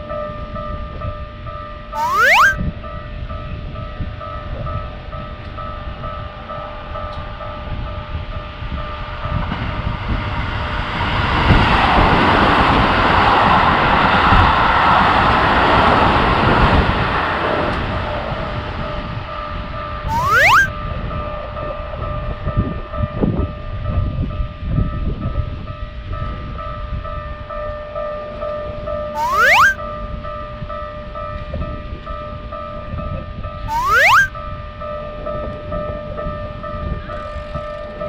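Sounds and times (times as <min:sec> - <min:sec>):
rising whistle-like sweep: 0:02.0 - 0:02.6, 0:20.1 - 0:20.7, 0:29.2 - 0:29.8, 0:33.7 - 0:34.3.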